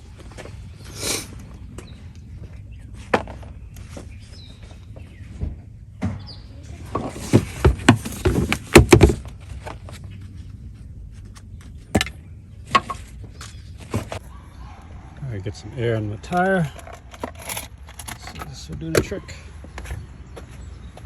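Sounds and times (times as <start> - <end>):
faint birds chirping: 0.0 - 21.0
tools clicking and knocking: 16.6 - 19.1.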